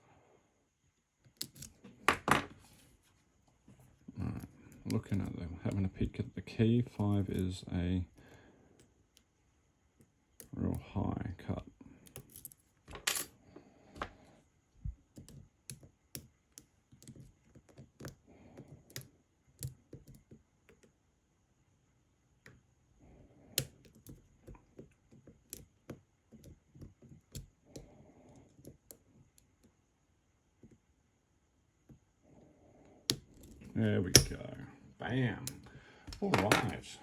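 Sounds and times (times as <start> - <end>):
lock pick clicking and scraping: 1.3 - 1.8, 12.0 - 13.2, 33.1 - 34.4.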